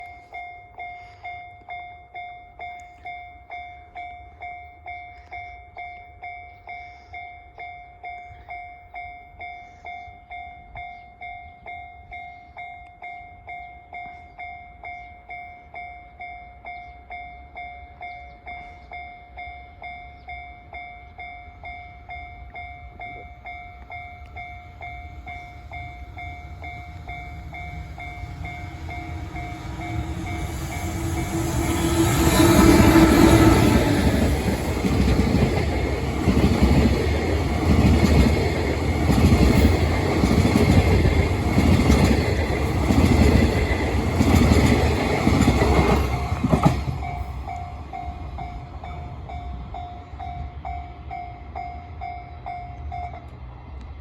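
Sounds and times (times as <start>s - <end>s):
level crossing warning bell: 0.0s - 53.6s
approaching train rumble: 18.4s - 54.0s.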